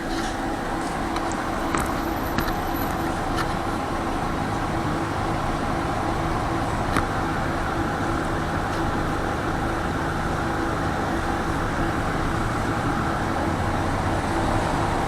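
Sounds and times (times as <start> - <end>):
tram rumble and hum: 0.0 - 15.0
sharp clicks and knocks: 0.8 - 3.6.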